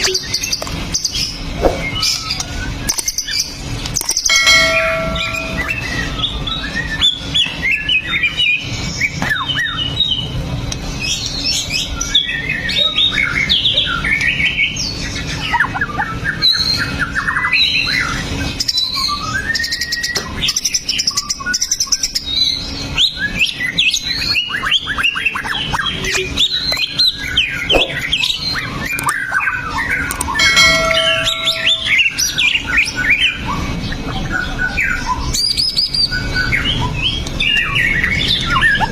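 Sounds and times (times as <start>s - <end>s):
steady low hum: 3.5s - 6.7s, 30.3s - 32.7s
songbird singing whistles and trills: 11.1s - 38.9s.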